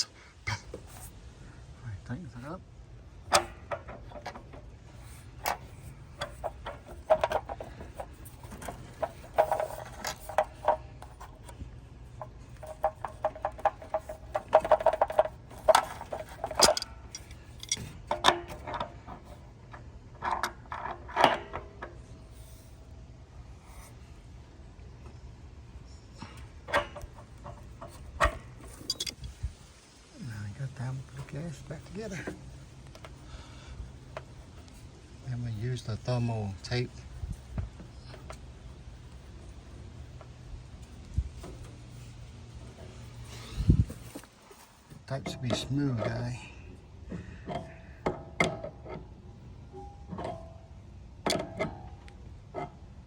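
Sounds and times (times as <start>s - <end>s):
rattling of tools: 3.0s - 22.8s, 26.1s - 29.7s, 30.8s - 50.6s
tools clicking against pipe fittings: 12.8s - 18.9s, 28.8s - 29.3s.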